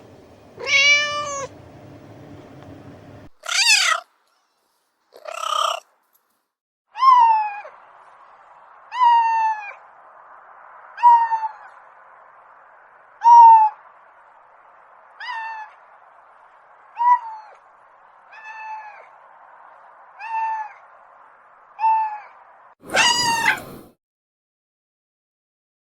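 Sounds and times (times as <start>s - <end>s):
cat mewing: 0.6s - 1.5s, 3.4s - 4.0s, 5.2s - 5.8s, 8.9s - 9.7s, 13.2s - 13.8s, 15.2s - 15.8s, 17.0s - 17.6s, 18.3s - 19.1s, 20.2s - 20.8s, 21.8s - 23.9s.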